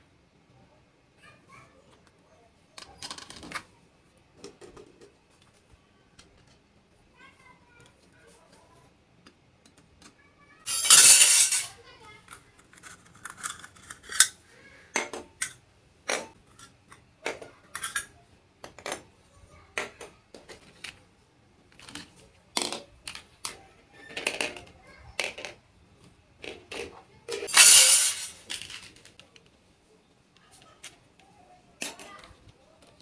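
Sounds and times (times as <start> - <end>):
toy kitchenware clicking and clinking: 2.8 - 3.7, 9.8 - 19.0, 21.7 - 25.6, 26.4 - 29.4, 31.8 - 32.3.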